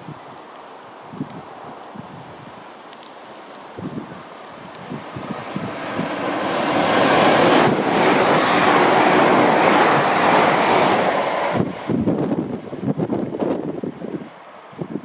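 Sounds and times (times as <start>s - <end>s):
wind buffeting microphone: 0.0s - 2.8s, 3.4s - 15.0s
train rushing past: 4.6s - 13.0s.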